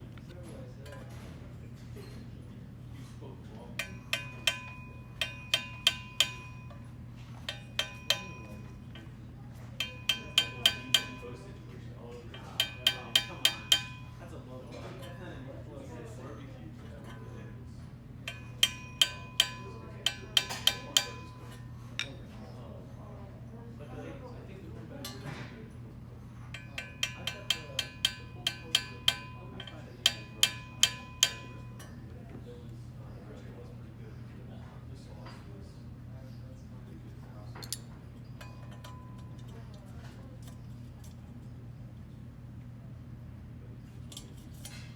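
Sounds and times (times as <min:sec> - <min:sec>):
metal tapping with ringing: 0:03.6 - 0:15.6, 0:18.2 - 0:22.4, 0:26.4 - 0:32.6, 0:37.5 - 0:41.5.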